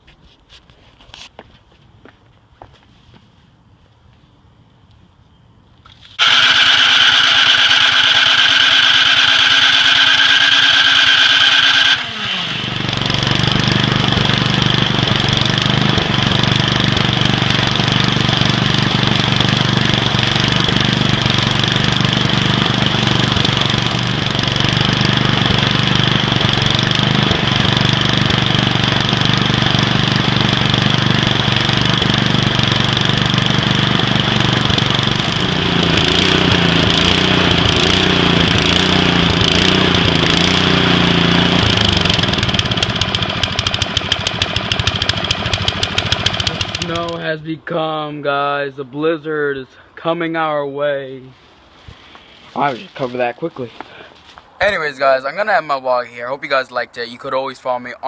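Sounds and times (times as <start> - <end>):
snowblower engine running: 6.2 - 47.2.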